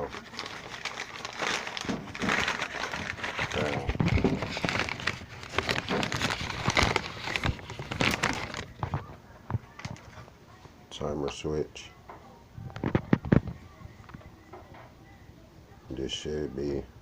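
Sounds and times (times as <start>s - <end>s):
wrapping crinkling and rustling: 0.0s - 10.4s.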